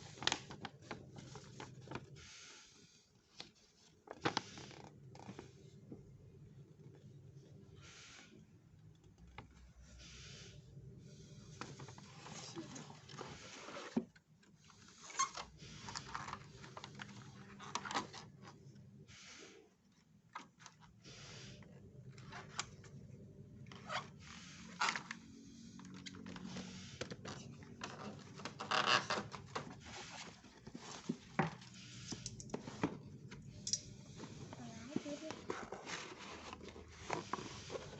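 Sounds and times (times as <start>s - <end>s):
steady low hum: 29.2s - 37.9s.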